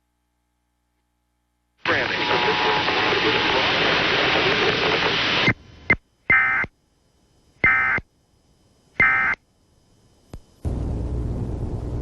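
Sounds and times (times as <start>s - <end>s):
harsh digital buzzing bursts: 1.8s - 5.6s, 6.2s - 10.3s.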